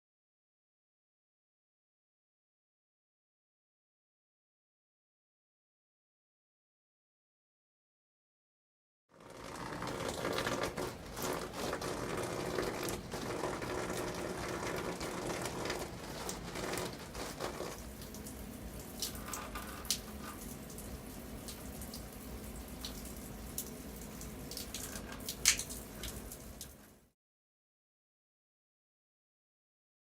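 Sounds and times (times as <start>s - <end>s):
water pouring and splashing: 9.2s - 26.8s
water trickling and dripping: 9.8s - 27.0s.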